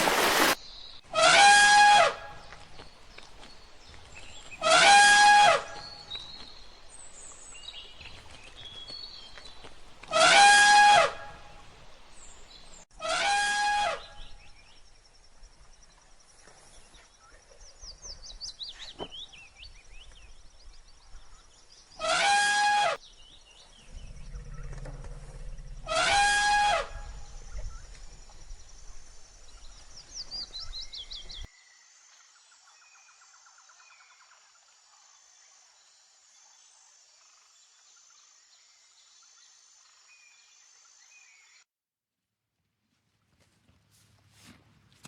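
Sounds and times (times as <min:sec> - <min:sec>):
loud pitched animal calls: 0:25.8 - 0:27.3.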